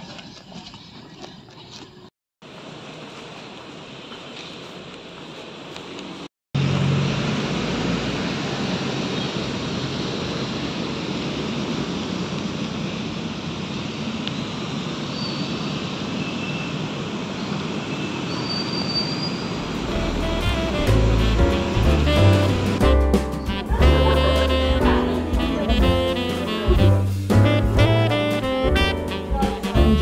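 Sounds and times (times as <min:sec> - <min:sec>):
vehicle-like rushing noise: 0:06.6 - 0:22.9
music: 0:19.8 - 0:30.0.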